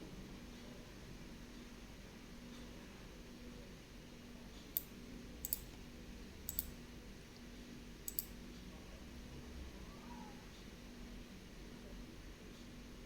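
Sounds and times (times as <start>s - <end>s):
light sharp clicks: 4.7s - 5.8s, 6.5s - 6.8s, 8.1s - 8.4s.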